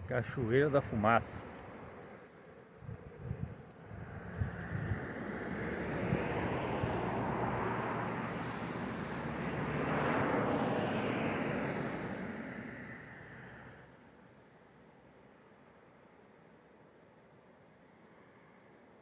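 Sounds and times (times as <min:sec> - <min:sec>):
vehicle passing by: 0:03.3 - 0:13.9.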